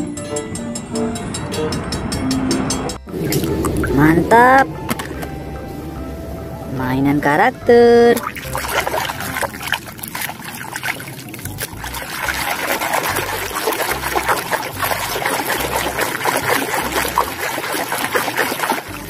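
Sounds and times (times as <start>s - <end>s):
water trickling and spattering: 3.1s - 19.0s.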